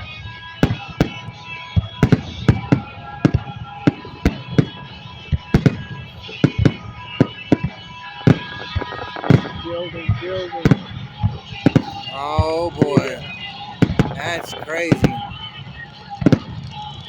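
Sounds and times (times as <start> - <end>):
fireworks banging: 0.5 - 9.6, 10.6 - 17.0.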